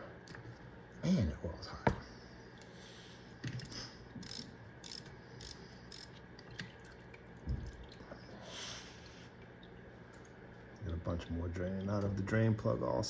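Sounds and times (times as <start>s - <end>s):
ratchet clicking: 3.6s - 6.1s.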